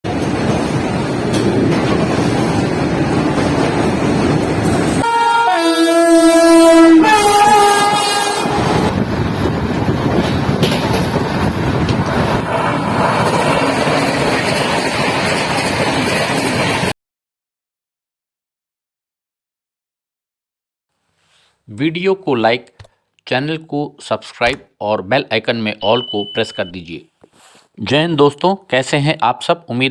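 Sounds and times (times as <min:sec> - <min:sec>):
train running on track: 0:00.0 - 0:16.9, 0:25.8 - 0:26.9
two-note locomotive horn: 0:05.0 - 0:08.9.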